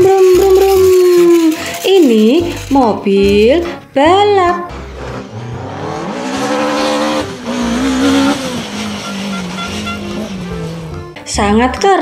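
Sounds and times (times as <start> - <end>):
race car engine revving: 4.7 - 11.2.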